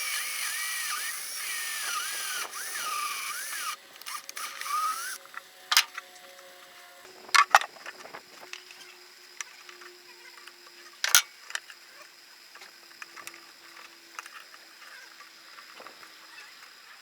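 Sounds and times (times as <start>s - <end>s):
small handling clicks: 11.0s - 11.8s.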